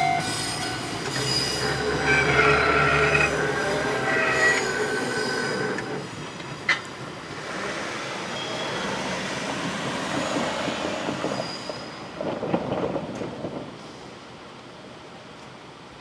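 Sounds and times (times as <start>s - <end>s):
wheel squeak: 0.0s - 6.0s
train wheels on rail: 0.0s - 15.9s.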